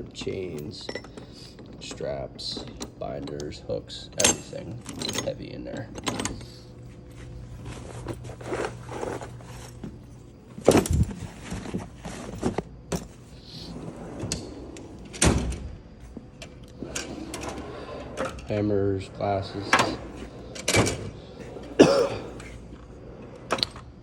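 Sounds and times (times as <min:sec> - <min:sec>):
tools clicking and rattling: 0:00.0 - 0:15.5
tool box drawers sliding: 0:00.0 - 0:15.6, 0:16.4 - 0:23.9.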